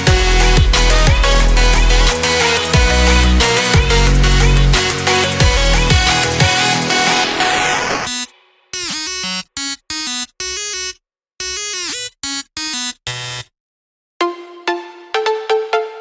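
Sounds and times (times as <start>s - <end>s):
plucked synth melody: 0.0s - 7.3s
dense electronic music: 0.0s - 10.8s
chopped-up synth stabs: 0.0s - 13.4s.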